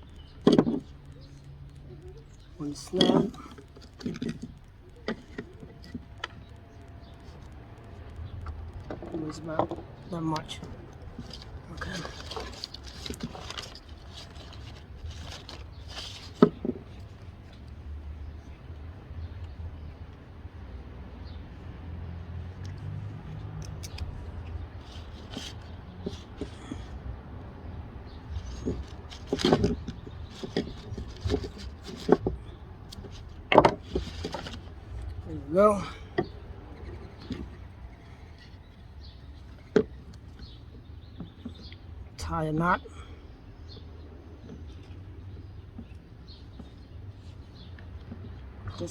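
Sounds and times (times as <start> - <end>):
rustling and scraping: 0.1 - 18.7, 22.1 - 41.9.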